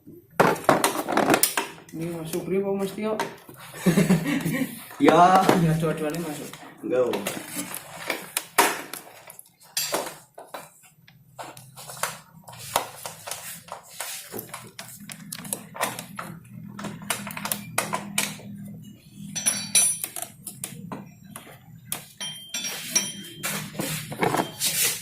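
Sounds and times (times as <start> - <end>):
metal tools clinking: 19.2 - 20.3, 22.2 - 24.8.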